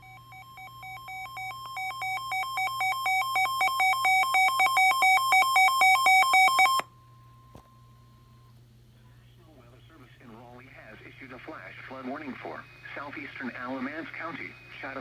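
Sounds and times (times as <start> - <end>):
two-pitch electronic alarm beeping: 0.0 - 6.8.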